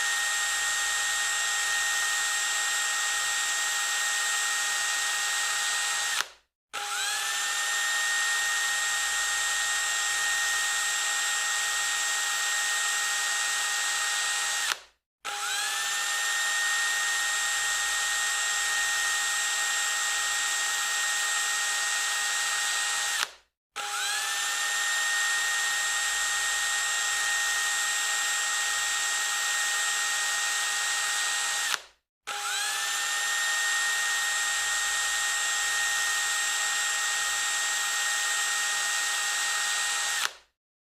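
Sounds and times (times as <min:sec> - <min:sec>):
electric drill whining: 0:00.0 - 0:40.5.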